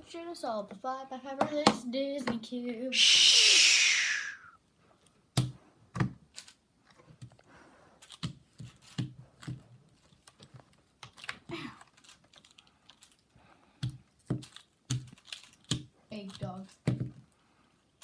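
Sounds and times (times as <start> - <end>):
puzzle cube plastic clicks: 14.3 - 17.0.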